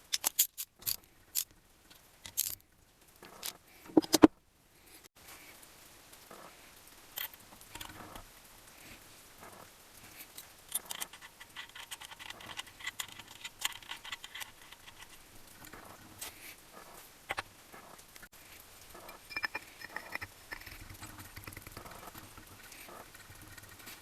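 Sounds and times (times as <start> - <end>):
metal engine parts clicking: 0.0 - 1.5, 2.2 - 2.6, 10.4 - 15.8, 19.0 - 24.0.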